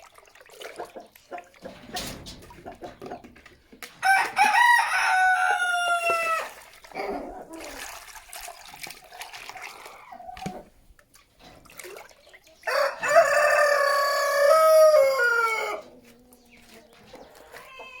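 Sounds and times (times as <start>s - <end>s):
chicken clucking: 0.6s - 7.9s, 9.2s - 11.4s, 12.5s - 18.0s
rooster crowing: 4.0s - 6.5s, 12.7s - 15.9s.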